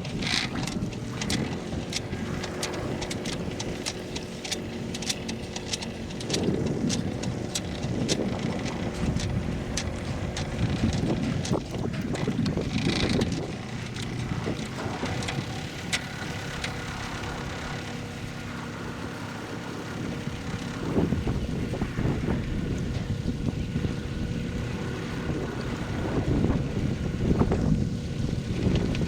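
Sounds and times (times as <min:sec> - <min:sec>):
sharp ticks: 0:00.0 - 0:18.0
water rushing along hull: 0:00.0 - 0:29.0
wind buffeting microphone: 0:00.0 - 0:29.0.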